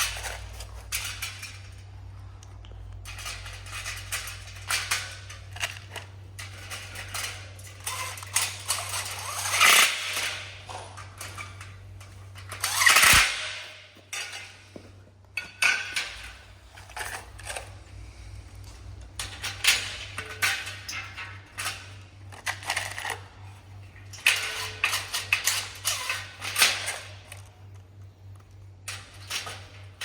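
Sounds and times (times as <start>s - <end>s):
metal parts clinking: 0.0s - 14.8s
steady low hum: 0.0s - 30.0s.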